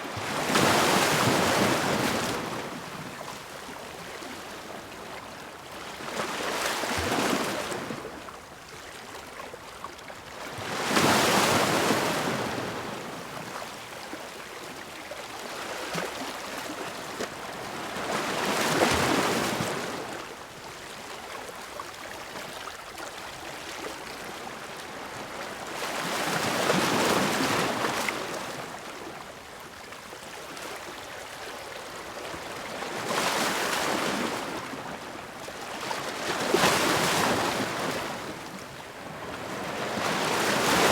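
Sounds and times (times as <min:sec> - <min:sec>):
surf washing: 0:39.2 - 0:40.9.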